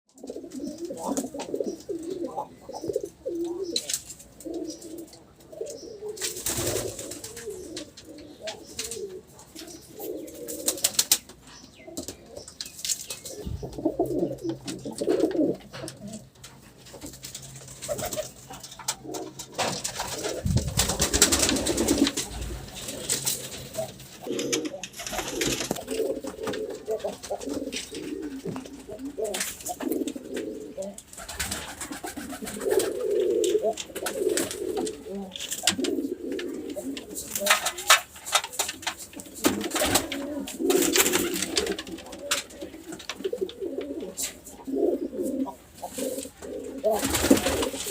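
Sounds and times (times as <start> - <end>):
pigeons cooing: 0.1 - 47.9
sharp clicks and clatters: 37.0 - 43.6.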